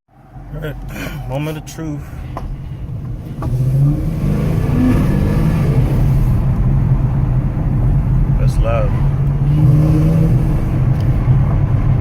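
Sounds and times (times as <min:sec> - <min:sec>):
car engine revving: 0:02.5 - 0:12.0.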